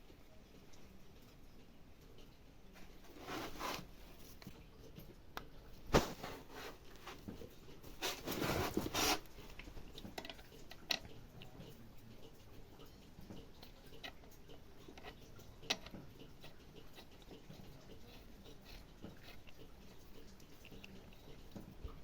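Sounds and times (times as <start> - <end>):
rustling and scraping: 2.8 - 4.6, 5.9 - 11.0.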